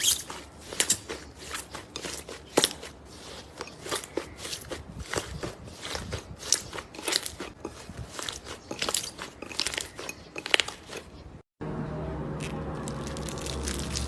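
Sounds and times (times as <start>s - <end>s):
crunchy slime being squeezed: 12.8s - 14.0s.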